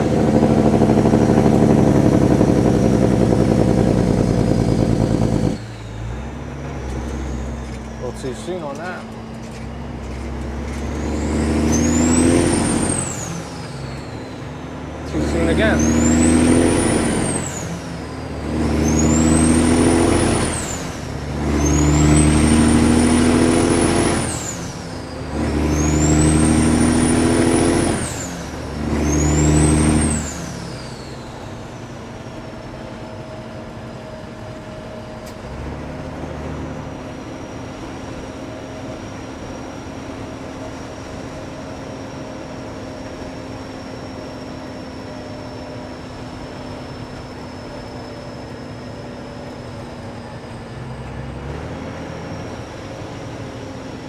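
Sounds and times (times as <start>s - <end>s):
diesel truck engine pulling hard: 0.0s - 54.0s.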